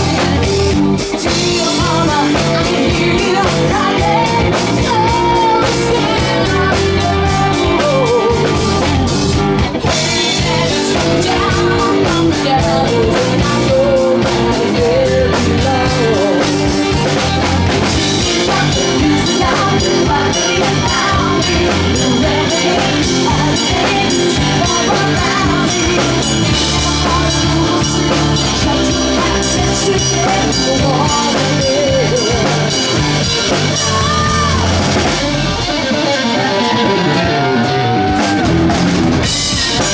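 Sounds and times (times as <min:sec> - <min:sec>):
bass: 0:00.0 - 0:39.9
drums: 0:00.0 - 0:39.9
wavering lead line: 0:00.0 - 0:39.9.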